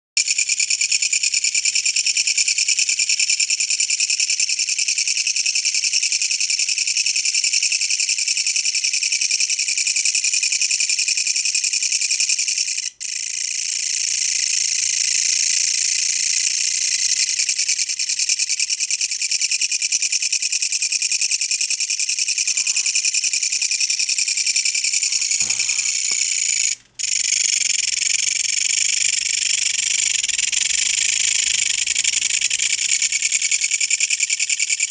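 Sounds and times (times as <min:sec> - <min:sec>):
katydid buzzing trill: 0:21.3 - 0:34.9.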